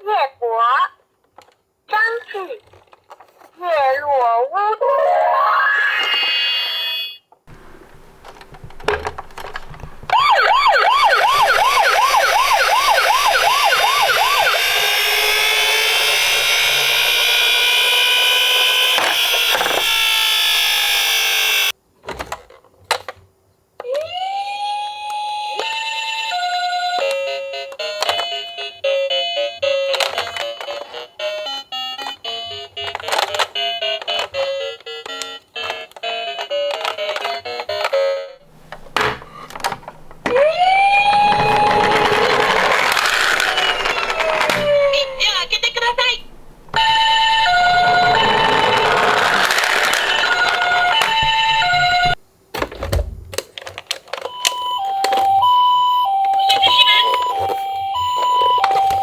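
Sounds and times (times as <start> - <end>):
toy ambulance siren: 10.1 - 21.8, 23.8 - 38.3, 39.5 - 52.2, 54.2 - 59.0
electronic beeping tune: 54.6 - 59.0.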